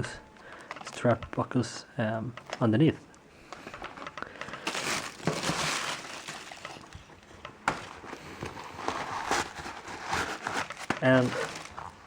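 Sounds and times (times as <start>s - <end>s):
shoe packaging rustling: 3.6s - 12.0s.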